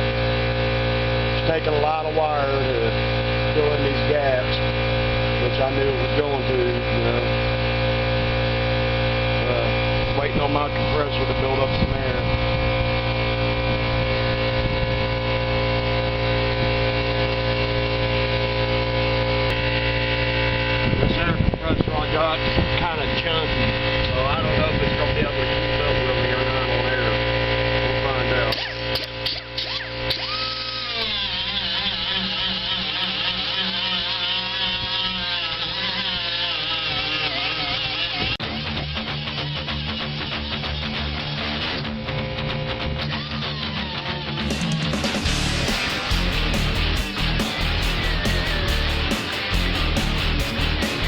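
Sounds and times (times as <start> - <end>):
air compressor humming: 0.0 - 51.0
grinder grinding metal: 0.0 - 51.0
guitar music: 4.5 - 32.7, 36.9 - 51.0.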